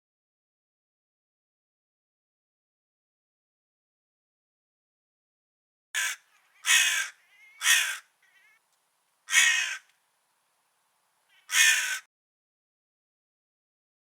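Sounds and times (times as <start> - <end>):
crow cawing: 6.0 - 8.6, 9.3 - 9.9, 11.3 - 12.1.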